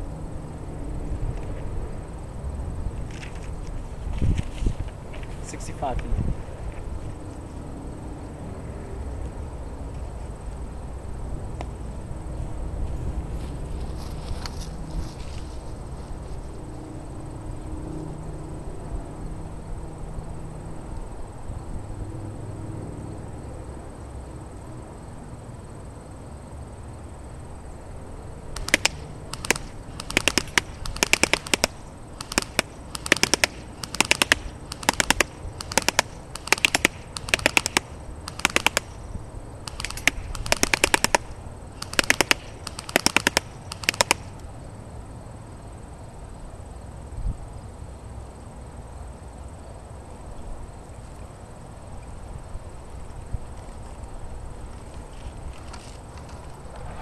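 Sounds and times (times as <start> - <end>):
wind rumbling on microphone: 0.9 - 7.3
airsoft gun firing rapid bursts: 28.6 - 39.0, 39.6 - 44.4.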